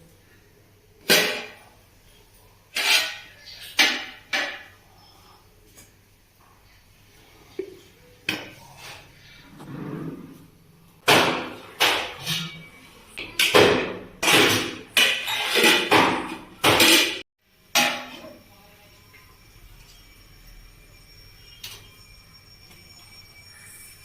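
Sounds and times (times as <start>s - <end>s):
utensils clinking against cookware: 2.7s - 4.8s, 11.4s - 18.5s.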